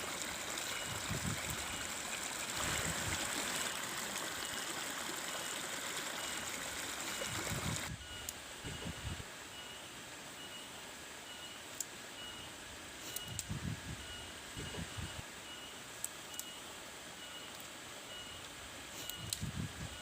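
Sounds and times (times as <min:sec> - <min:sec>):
stream rushing: 0:00.0 - 0:08.0
faint high chirp: 0:08.0 - 0:13.4, 0:14.0 - 0:20.0.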